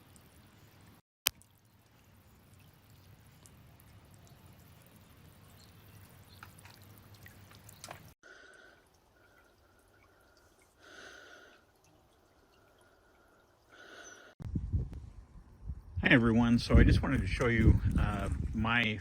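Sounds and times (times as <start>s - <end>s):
water dripping and splashing: 0.0s - 14.3s, 16.7s - 18.9s.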